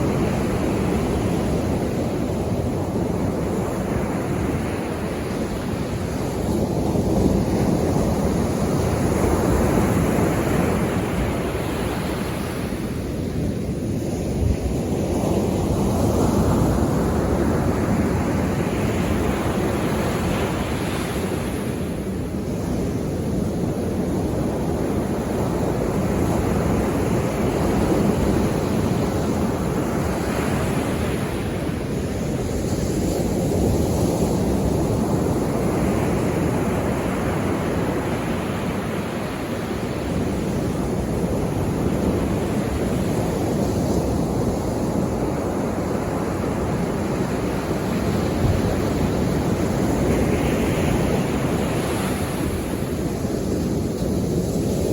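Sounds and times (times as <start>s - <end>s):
sea waves breaking on shore: 0.0s - 54.9s.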